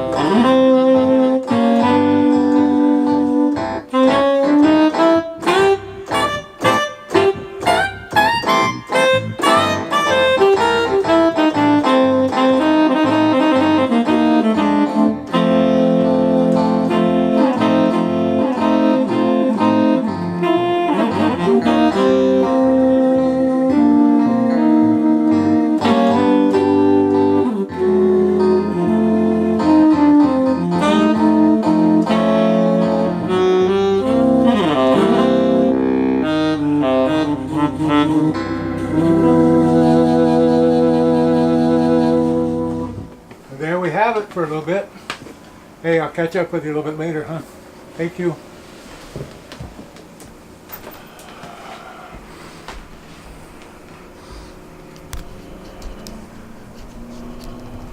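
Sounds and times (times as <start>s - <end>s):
low bass line: 0.0s - 43.2s, 53.8s - 57.9s
keyboard saxophone-like melody: 0.0s - 43.4s, 52.2s - 57.9s
sustained keyboard chords: 0.0s - 44.9s, 52.8s - 57.9s.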